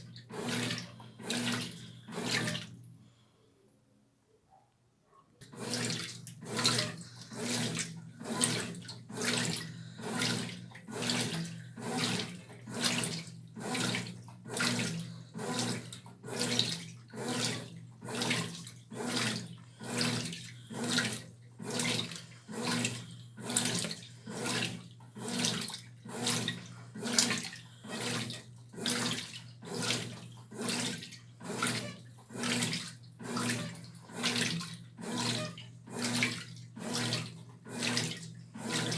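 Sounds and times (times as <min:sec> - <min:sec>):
water and clothes sloshing: 0:00.0 - 0:02.8, 0:05.4 - 0:38.9
washing machine motor hum: 0:00.0 - 0:03.2, 0:04.5 - 0:38.9.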